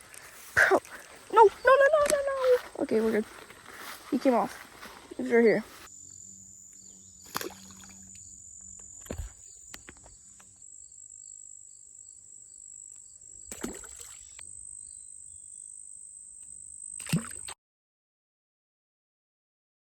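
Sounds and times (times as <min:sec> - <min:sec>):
insects trilling: 0:00.0 - 0:17.5
handling knocks and rustles: 0:08.8 - 0:10.2.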